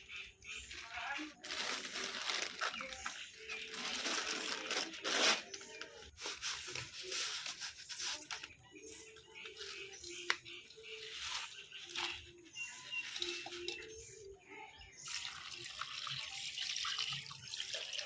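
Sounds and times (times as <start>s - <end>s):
rustling and tearing: 0.7s - 8.5s.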